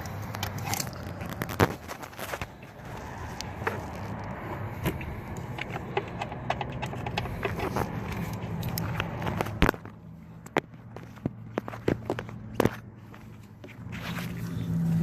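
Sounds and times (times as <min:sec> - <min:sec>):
tools and metal parts clicking: 0:00.0 - 0:02.1, 0:05.0 - 0:12.4.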